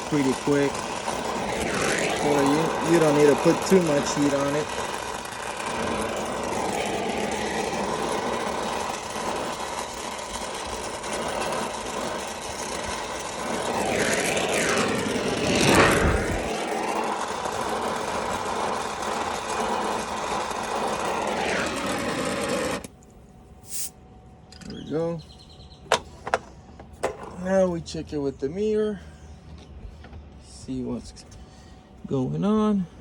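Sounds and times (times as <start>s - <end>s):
torch flame hissing: 0.0s - 22.9s, 23.6s - 24.0s.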